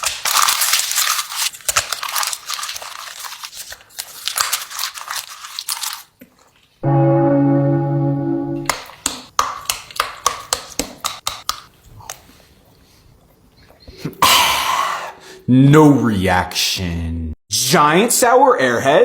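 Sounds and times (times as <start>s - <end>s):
loud steady tone: 6.8s - 8.7s.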